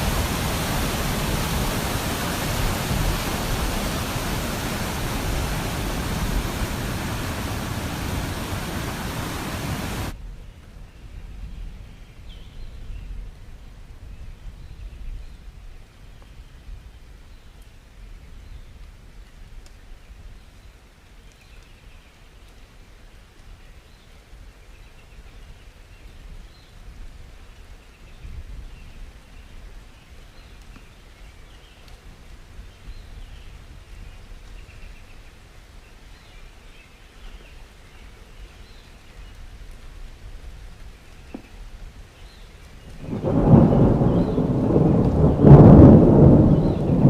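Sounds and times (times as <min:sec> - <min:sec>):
steady low rumble: 0:00.0 - 0:10.1.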